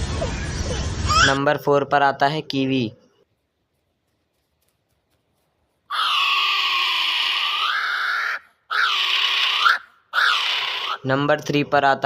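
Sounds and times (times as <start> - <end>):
kiwi bird calling: 5.9 - 11.1.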